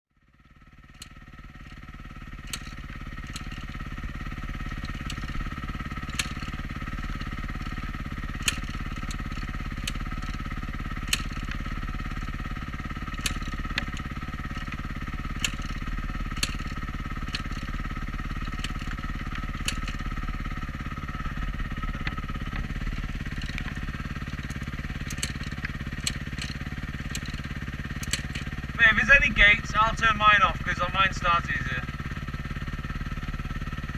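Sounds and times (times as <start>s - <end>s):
dirt bike engine idling: 0.1s - 33.9s
sharp clicks: 2.4s - 3.8s, 4.6s - 7.8s, 8.4s - 10.4s, 11.0s - 11.7s, 13.1s - 17.8s, 18.4s - 20.1s, 21.9s - 31.7s.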